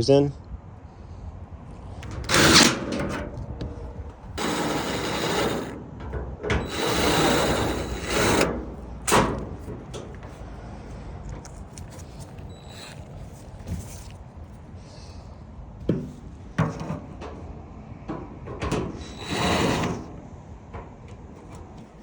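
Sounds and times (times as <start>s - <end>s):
power screwdriver driving screws: 2.3s - 3.2s, 4.4s - 5.8s, 6.6s - 9.3s.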